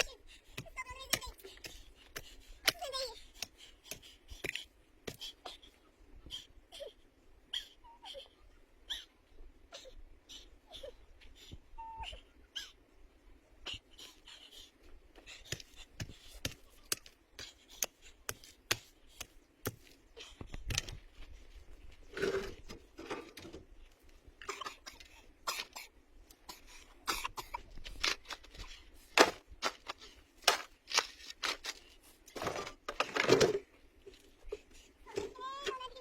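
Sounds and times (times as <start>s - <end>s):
cough-like vocal sounds: 24.4s - 25.9s, 26.5s - 27.6s.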